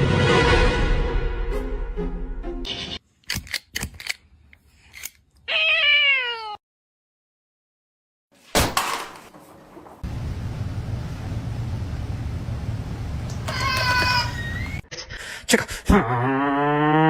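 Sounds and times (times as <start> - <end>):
cat meowing: 5.5 - 6.6, 13.5 - 14.5.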